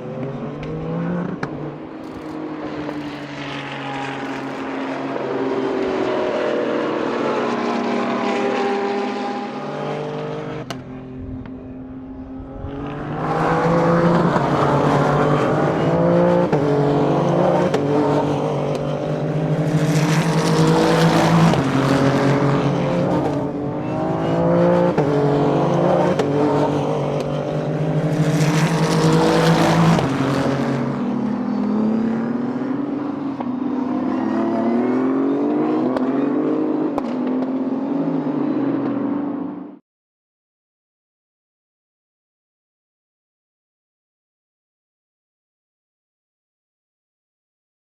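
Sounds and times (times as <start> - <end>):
race cars passing at speed: 0.0 - 39.8.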